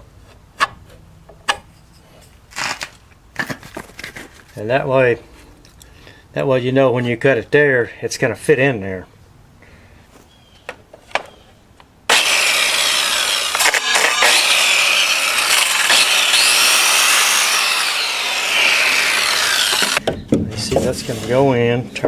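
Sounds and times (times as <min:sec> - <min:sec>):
power saw cutting plywood: 0:12.1 - 0:20.0.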